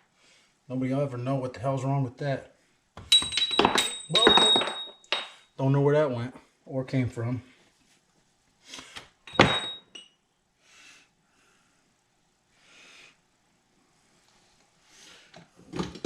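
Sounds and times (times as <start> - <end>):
metallic clink with ring: 3.1 - 5.5, 9.3 - 10.2.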